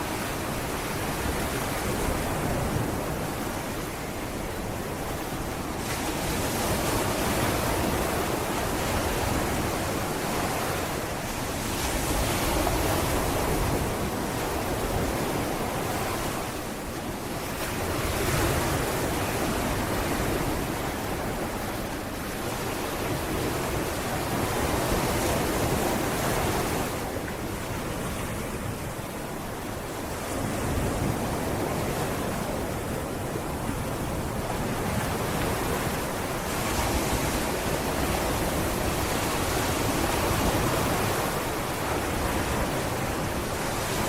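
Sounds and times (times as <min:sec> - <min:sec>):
sea waves breaking on beach: 0:00.0 - 0:44.0.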